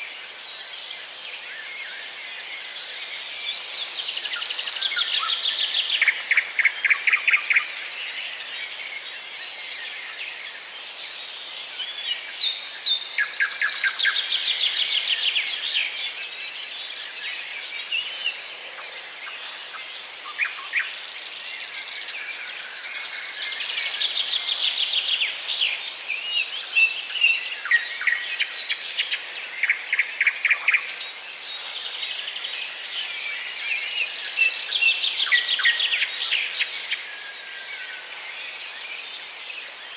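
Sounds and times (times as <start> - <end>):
background hiss: 0.0 - 39.9
songbirds singing: 0.0 - 39.9.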